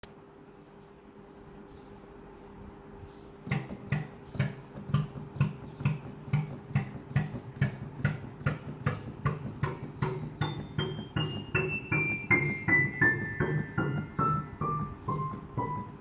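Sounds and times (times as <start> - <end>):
glitchy high whistling piano notes: 3.5 - 16.0.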